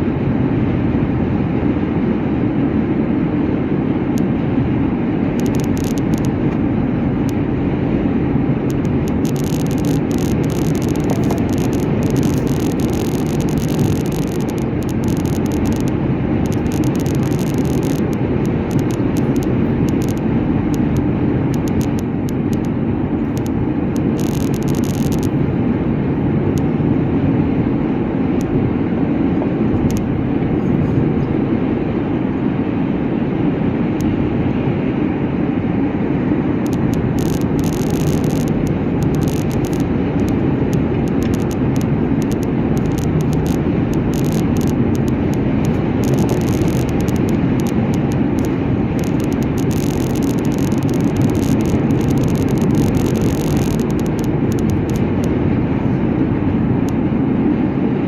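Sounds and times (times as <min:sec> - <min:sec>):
car driving at highway speed: 0:00.0 - 0:58.0
short crackles and clicks: 0:04.1 - 0:28.7, 0:29.4 - 0:31.3, 0:33.9 - 0:34.3, 0:36.0 - 0:57.1.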